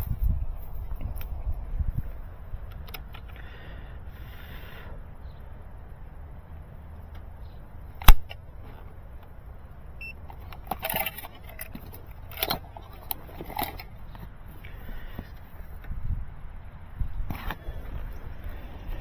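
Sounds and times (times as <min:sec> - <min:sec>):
low wind rumble on microphone: 0:00.0 - 0:07.8, 0:12.7 - 0:19.0
loud sharp click: 0:08.0 - 0:08.4.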